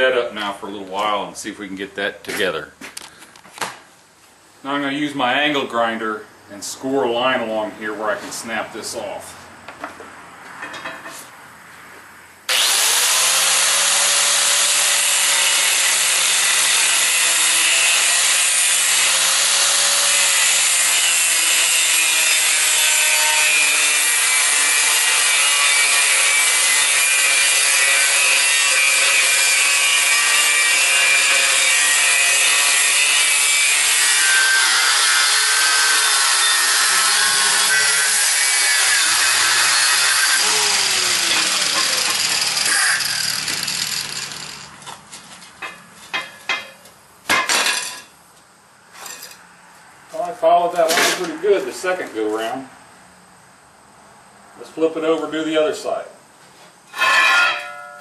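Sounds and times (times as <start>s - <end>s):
angle grinder cutting metal: 12.5s - 45.0s.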